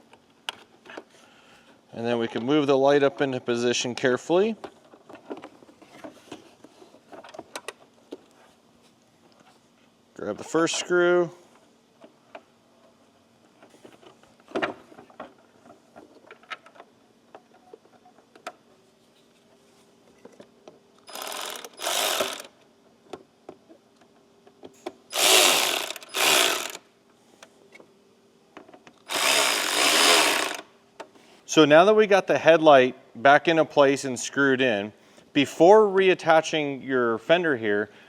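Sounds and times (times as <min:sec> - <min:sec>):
power drill driving screws: 0:21.1 - 0:22.5, 0:25.1 - 0:26.8, 0:29.1 - 0:30.7.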